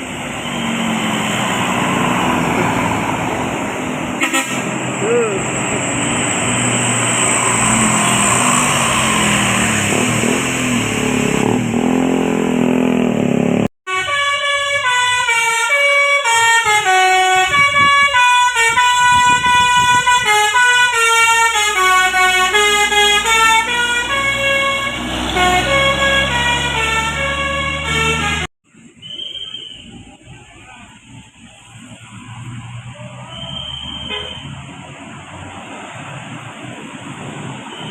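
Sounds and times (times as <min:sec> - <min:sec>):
bus engine running: 0:00.0 - 0:13.7, 0:16.0 - 0:28.5
road noise: 0:00.0 - 0:37.9
bus musical horn playing a tune: 0:04.2 - 0:05.2, 0:13.9 - 0:28.5, 0:33.5 - 0:34.6.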